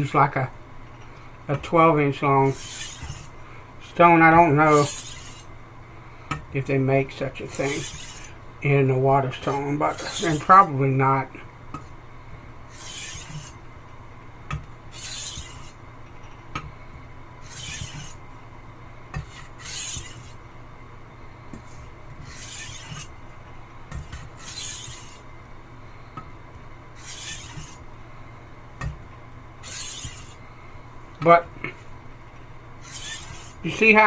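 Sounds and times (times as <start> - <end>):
knife scraping on water stone: 2.5 - 3.3, 4.7 - 5.5, 7.4 - 8.4, 9.3 - 10.5, 12.7 - 13.6, 14.9 - 15.8, 17.4 - 18.2, 19.1 - 20.4, 21.6 - 23.2, 23.9 - 25.3, 27.0 - 27.8, 29.6 - 30.4, 32.8 - 33.6.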